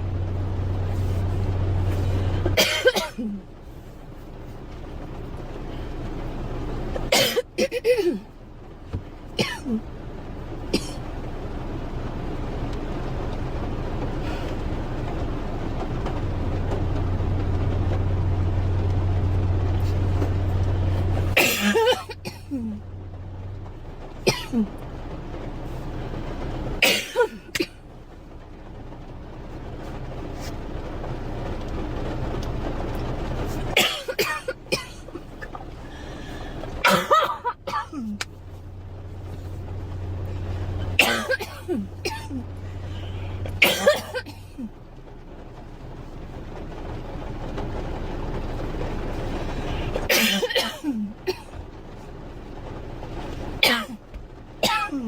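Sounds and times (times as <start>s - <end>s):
steady rumbling noise: 0.0s - 55.0s
girl coughing: 2.5s - 3.4s, 7.1s - 8.2s, 9.4s - 9.8s, 21.4s - 22.7s, 24.3s - 24.7s, 26.8s - 27.7s, 33.8s - 35.0s, 36.8s - 38.2s, 41.0s - 42.4s, 43.6s - 44.7s, 50.1s - 51.5s, 53.6s - 54.0s, 54.6s - 55.0s.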